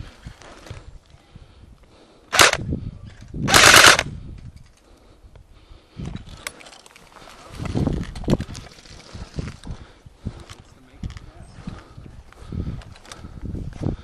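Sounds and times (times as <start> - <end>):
airsoft gun full-auto bursts: 2.3 - 2.6, 3.5 - 4.1.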